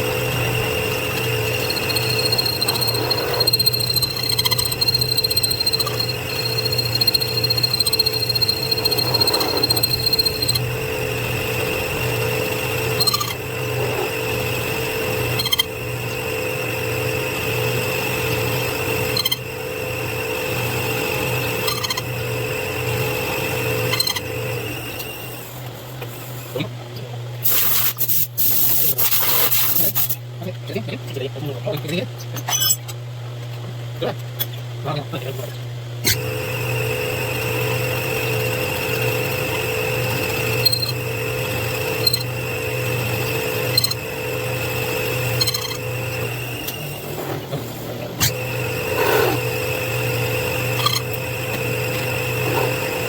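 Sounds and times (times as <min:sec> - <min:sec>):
machine tool hum and whine: 0:00.0 - 0:53.0
short hissing bursts: 0:27.4 - 0:30.2.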